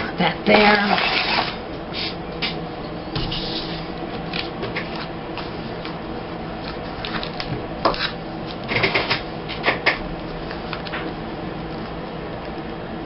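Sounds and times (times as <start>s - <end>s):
paper rustling and tapping: 6.6s - 11.2s.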